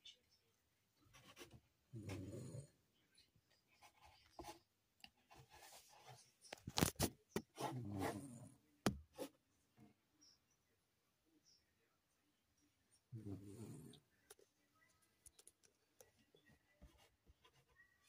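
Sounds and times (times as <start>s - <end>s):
dog snoring: 1.9s - 2.8s, 7.7s - 8.6s, 13.1s - 14.0s.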